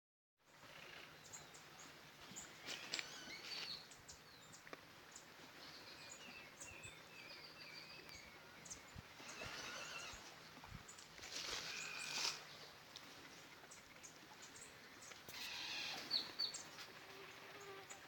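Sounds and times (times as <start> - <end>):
birds chirping: 0.4 - 18.0
bird warbling: 15.3 - 16.6.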